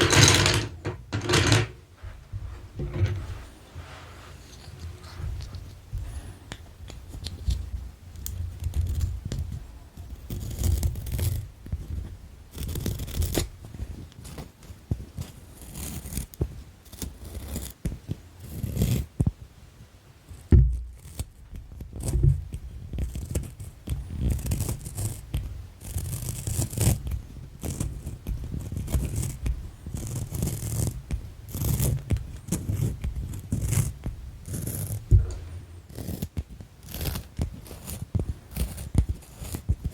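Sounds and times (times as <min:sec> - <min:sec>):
pencils scratching on paper: 0:25.8 - 0:39.9.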